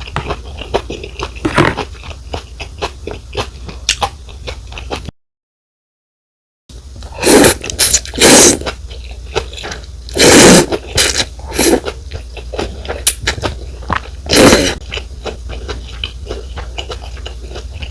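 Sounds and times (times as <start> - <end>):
wet chewing clicks: 0.0 - 5.1
slurping noodles: 7.0 - 12.0, 12.6 - 17.9.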